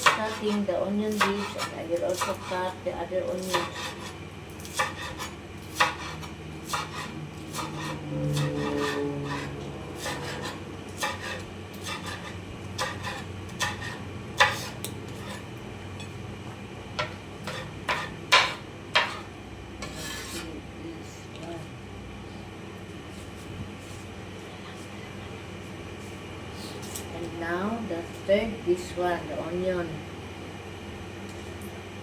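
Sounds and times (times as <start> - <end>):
knife rubbing through onion: 0.0 - 2.8, 3.4 - 15.5, 19.0 - 20.6.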